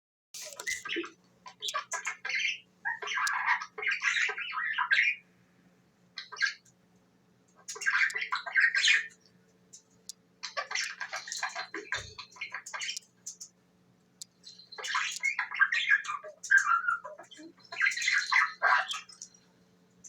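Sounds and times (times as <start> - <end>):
budgerigar chattering: 0.4 - 5.2, 6.2 - 6.6, 7.6 - 9.2, 10.4 - 13.1, 14.4 - 19.4.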